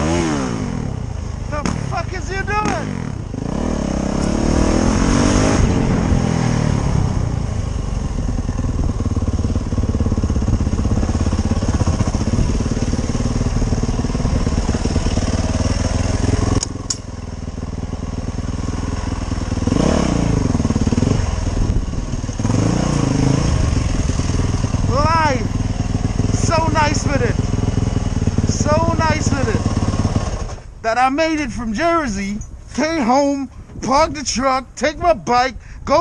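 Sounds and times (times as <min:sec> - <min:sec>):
motorcycle engine running: 0:00.0 - 0:30.8
wind noise: 0:10.2 - 0:13.2, 0:30.7 - 0:36.0.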